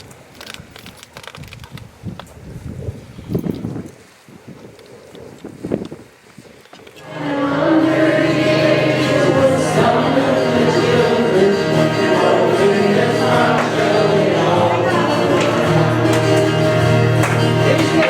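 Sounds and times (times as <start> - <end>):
wind rumble on microphone: 0.0 - 7.0
voices singing hymn-like music: 7.0 - 18.0.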